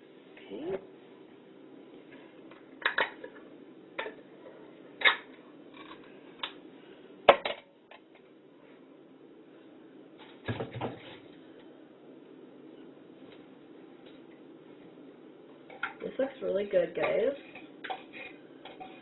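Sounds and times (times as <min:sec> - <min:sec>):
dishes and utensils clinking: 0:17.0 - 0:19.0.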